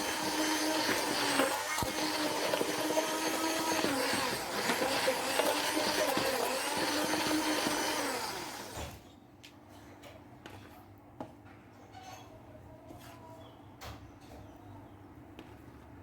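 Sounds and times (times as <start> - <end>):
electric mixer running: 0.0 - 9.0.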